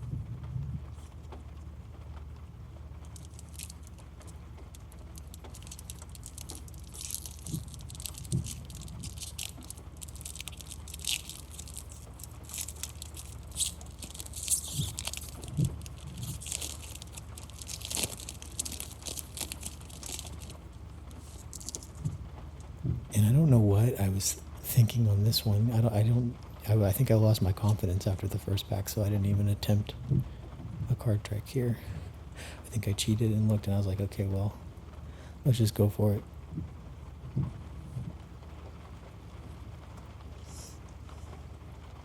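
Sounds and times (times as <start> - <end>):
low steady hum: 0.0 - 42.0
foil wrapper crinkling and tearing: 3.0 - 22.1
cards rustling: 3.1 - 22.1.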